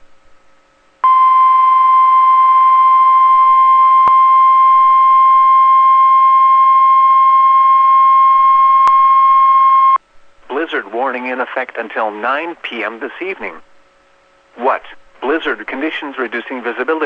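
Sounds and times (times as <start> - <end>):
steady warning alarm tone: 1.0 - 10.0.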